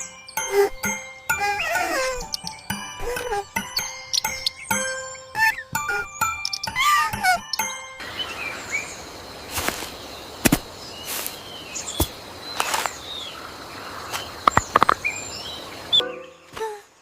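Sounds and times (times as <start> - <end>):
birds chirping: 0.0 - 17.0
sharp knocks: 14.4 - 15.0.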